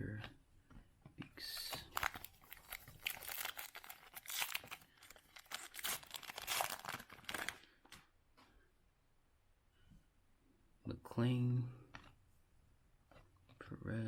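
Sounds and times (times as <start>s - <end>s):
foil wrapper tearing and rustling: 1.9s - 7.7s.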